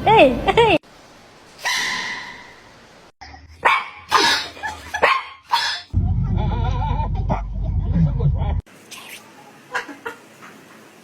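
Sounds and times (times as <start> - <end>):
dog barking: 3.6 - 5.9.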